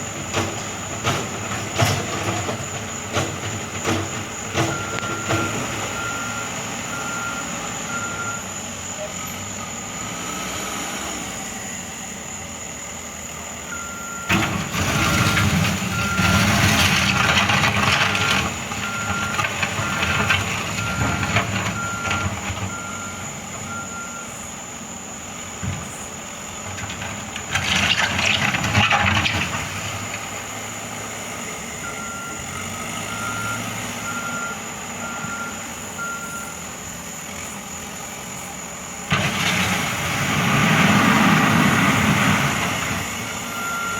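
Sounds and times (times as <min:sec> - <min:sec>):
truck engine running: 0:00.0 - 0:43.9
truck reversing alarm beeps: 0:00.0 - 0:43.9.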